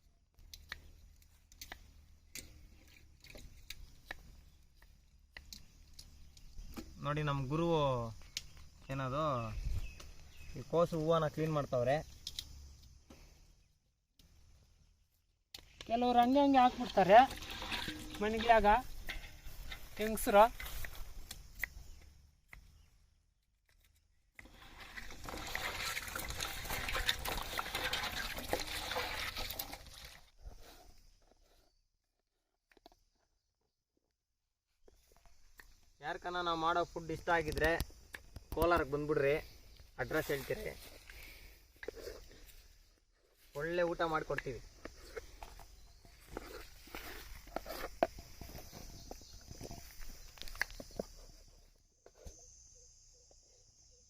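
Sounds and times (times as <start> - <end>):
water pouring and splashing: 16.6 - 20.8, 24.4 - 30.8.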